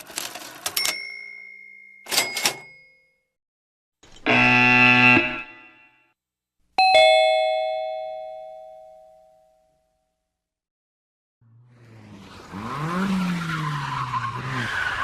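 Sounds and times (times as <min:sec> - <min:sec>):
electric doorbell buzz: 0:04.1 - 0:06.0, 0:06.8 - 0:09.1
two-note ding-dong chime: 0:06.8 - 0:09.6.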